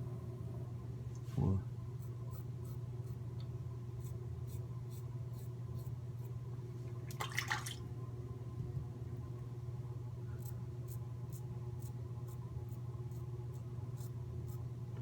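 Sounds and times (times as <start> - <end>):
low hum: 0.0 - 2.0
water splash: 7.1 - 7.8.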